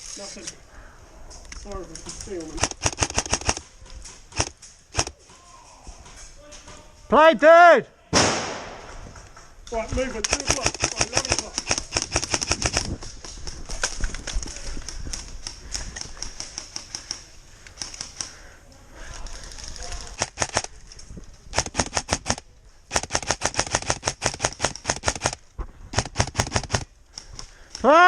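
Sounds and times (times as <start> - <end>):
airsoft rifle firing: 2.6 - 3.6, 4.3 - 5.2, 8.2 - 8.9, 10.3 - 12.9, 21.5 - 26.9.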